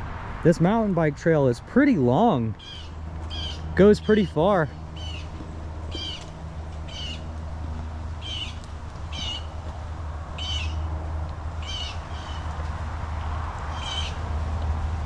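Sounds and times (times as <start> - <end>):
blue jays screaming: 2.6 - 7.4, 8.2 - 9.6, 10.3 - 11.0, 11.6 - 12.6, 13.6 - 14.3.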